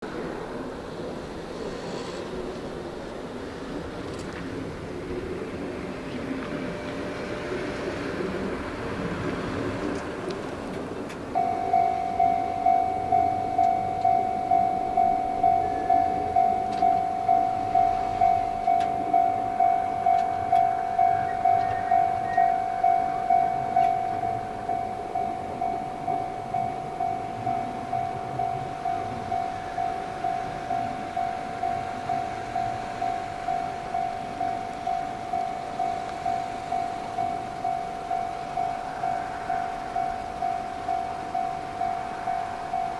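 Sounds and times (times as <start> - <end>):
level crossing electronic bell: 11.4 - 42.9.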